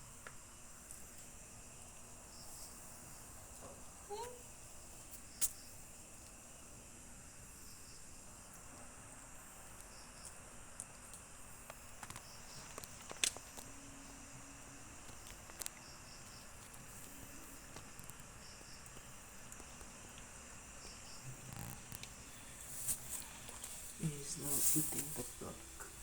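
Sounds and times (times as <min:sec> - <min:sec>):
crickets chirping: 0:00.0 - 0:26.0.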